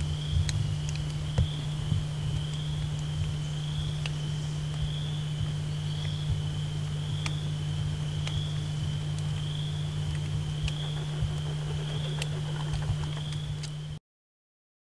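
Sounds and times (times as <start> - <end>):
insects trilling: 0.0 - 14.0
low hum: 0.0 - 14.0
faint clicks: 10.1 - 13.8.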